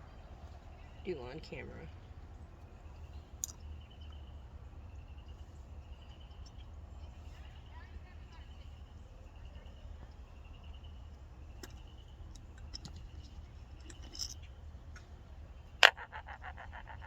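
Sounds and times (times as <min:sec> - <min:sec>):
rattling clicks: 0:11.6 - 0:14.4
metal parts clinking on workbench: 0:12.7 - 0:14.4
sharp clack: 0:15.8 - 0:17.0.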